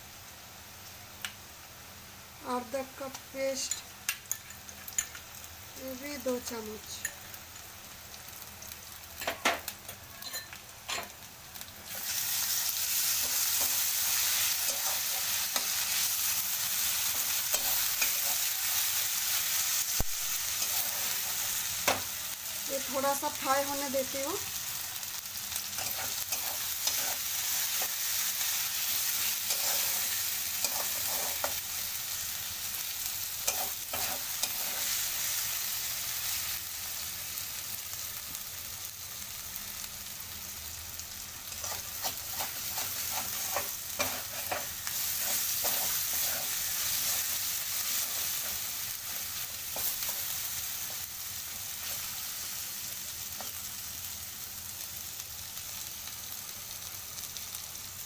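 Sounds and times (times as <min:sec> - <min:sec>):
onions sizzling in hot oil: 0:00.0 - 0:58.0
spoon scraping a pan: 0:10.2 - 0:11.1, 0:13.0 - 0:16.1, 0:16.7 - 0:18.9, 0:20.5 - 0:22.1, 0:25.8 - 0:28.1, 0:28.8 - 0:31.7, 0:33.4 - 0:35.0, 0:41.5 - 0:51.1.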